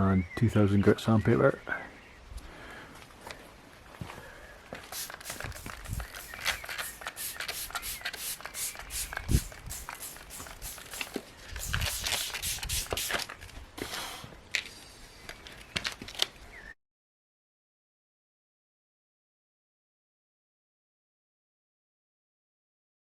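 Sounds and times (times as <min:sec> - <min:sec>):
sandpaper rubbing wet paint: 0:04.9 - 0:13.3.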